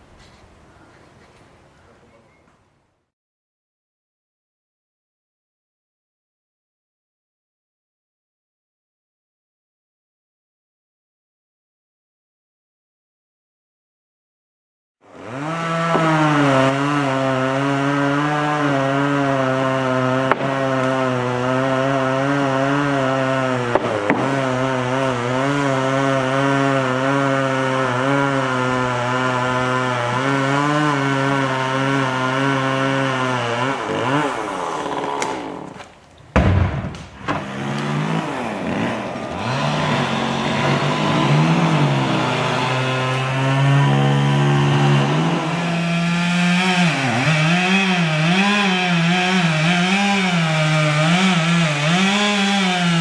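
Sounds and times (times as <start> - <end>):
chainsaw cutting: 15.0 - 53.0
low thump: 36.3 - 37.5.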